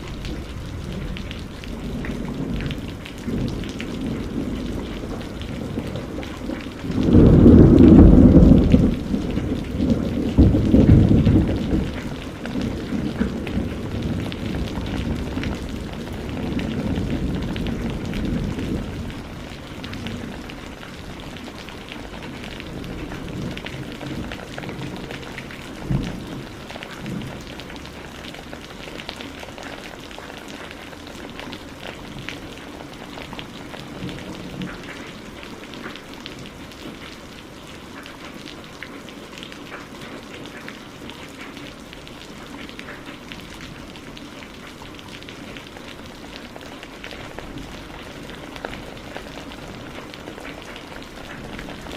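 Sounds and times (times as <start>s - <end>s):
thunder rumbling: 0.0s - 28.7s
rain pattering: 0.0s - 51.9s.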